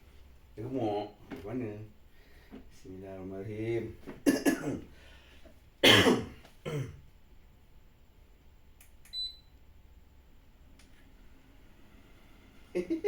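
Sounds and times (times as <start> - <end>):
man coughing: 4.3 - 4.9, 5.8 - 7.0.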